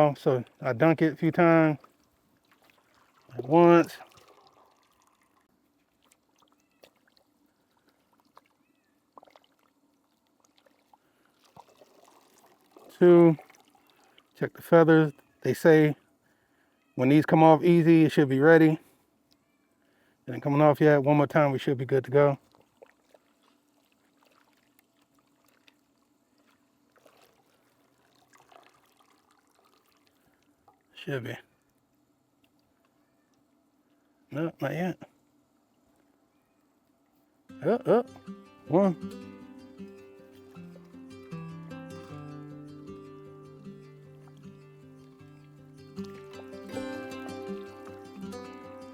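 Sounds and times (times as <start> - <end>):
water splashing and dripping: 1.7 - 14.4, 22.4 - 30.9, 43.6 - 48.6
water sloshing in a pot: 1.8 - 14.4, 22.4 - 30.9, 45.2 - 48.0.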